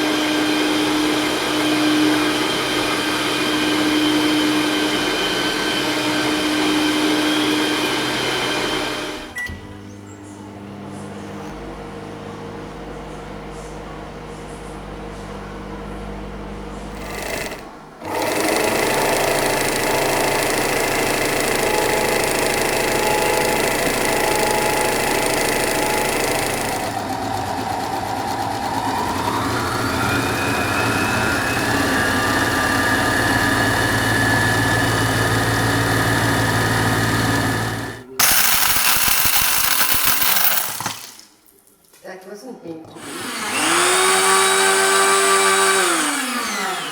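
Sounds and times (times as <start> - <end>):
harsh whirring: 16.2 - 41.2, 42.9 - 46.9
small electric motor whining: 16.9 - 41.1, 42.9 - 46.9.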